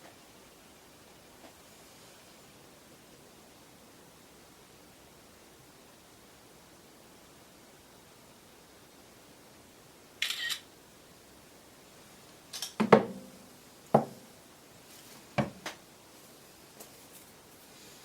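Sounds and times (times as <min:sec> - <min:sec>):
hard objects knocking: 0:12.8 - 0:13.3, 0:14.0 - 0:14.2.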